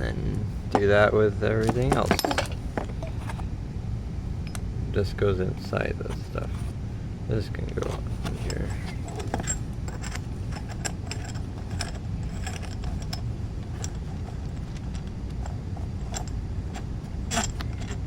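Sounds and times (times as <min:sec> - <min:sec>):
steady low rumble: 0:00.0 - 0:18.0
metal and plastic parts clicking: 0:08.2 - 0:18.0.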